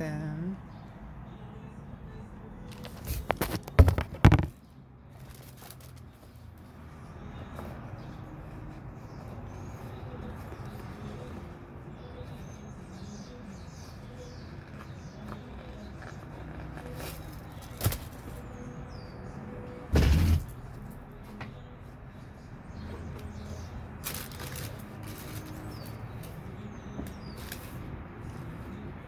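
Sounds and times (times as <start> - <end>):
handling knocks and rustles: 2.7 - 6.4, 14.5 - 18.7, 22.9 - 28.9.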